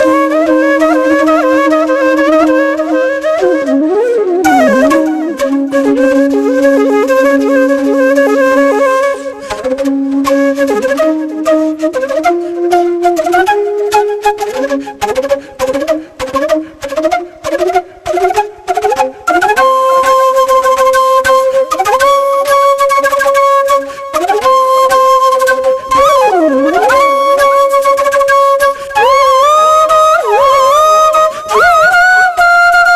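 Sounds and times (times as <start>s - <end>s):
instrumental background music: 4.4s - 28.9s.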